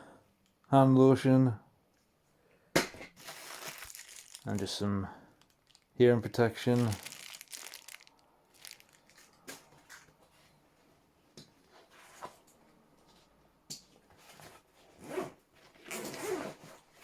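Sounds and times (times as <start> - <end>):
bag zip being pulled: 15.0 - 16.6.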